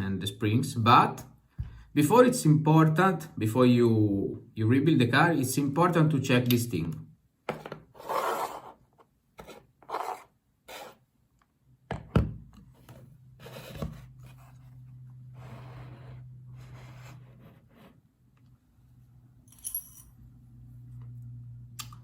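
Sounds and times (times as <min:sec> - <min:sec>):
handling scrapes and rubs: 0:09.4 - 0:11.0.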